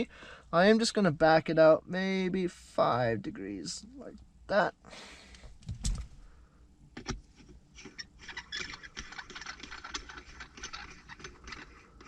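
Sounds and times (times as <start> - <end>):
metallic clicks and rattles: 8.2 - 11.8.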